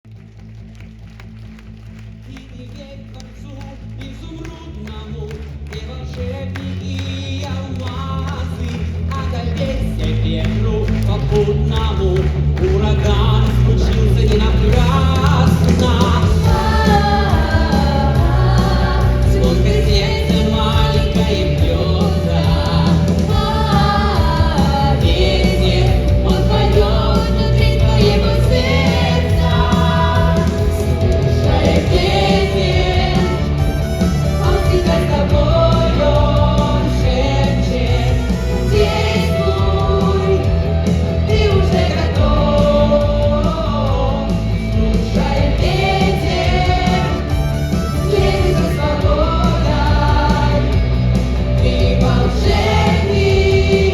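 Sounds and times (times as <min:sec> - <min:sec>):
loud music with singing: 0:01.9 - 0:53.9
heavy bass line: 0:04.2 - 0:53.9.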